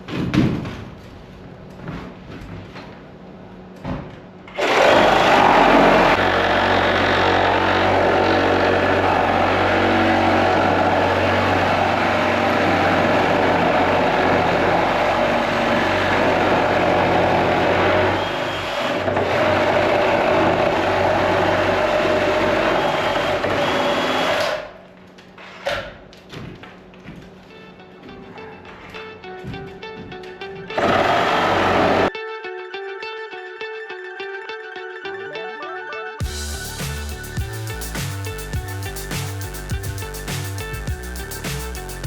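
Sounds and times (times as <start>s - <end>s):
handheld power tool running: 4.5s - 24.7s.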